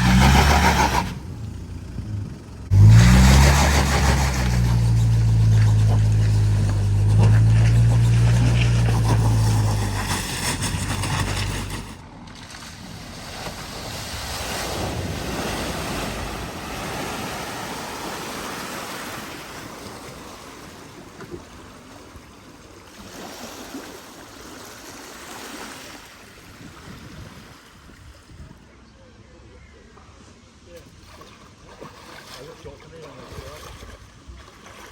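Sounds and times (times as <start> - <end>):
car engine running: 0.0 - 13.3
water rushing: 2.7 - 26.8
wind on microphone: 26.5 - 28.6.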